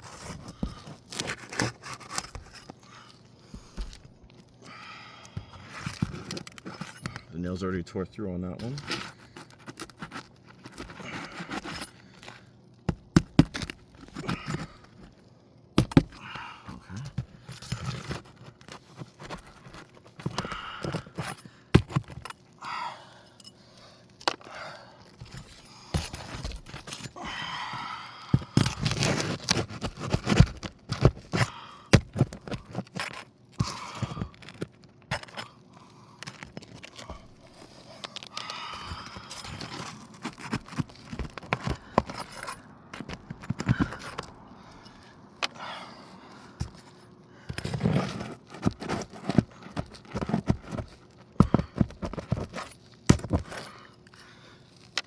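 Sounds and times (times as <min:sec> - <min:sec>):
metal scraping under shingles: 0:32.0 - 0:51.1.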